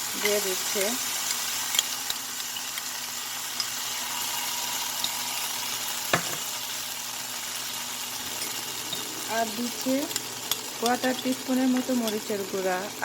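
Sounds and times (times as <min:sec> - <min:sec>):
sauce sizzling in hot oil: 0:00.0 - 0:13.0
sharp knock on pan: 0:06.1 - 0:06.5.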